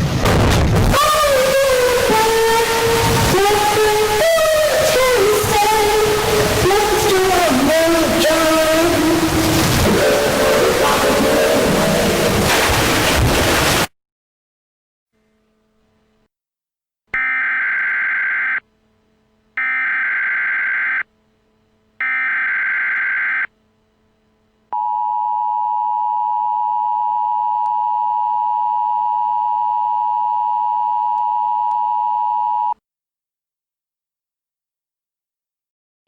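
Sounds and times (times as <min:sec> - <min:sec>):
screechy digital data bursts: 0:17.2 - 0:18.6, 0:19.6 - 0:21.0, 0:22.0 - 0:23.5
two-tone alert signal: 0:17.2 - 0:18.6, 0:19.6 - 0:21.0, 0:22.0 - 0:23.5.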